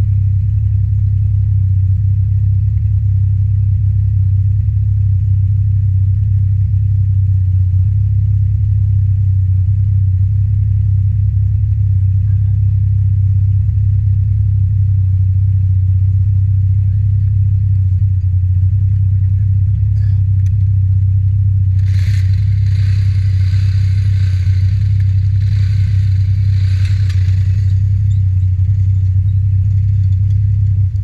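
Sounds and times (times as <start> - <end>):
muffled atv engine rumble: 0.0 - 31.0.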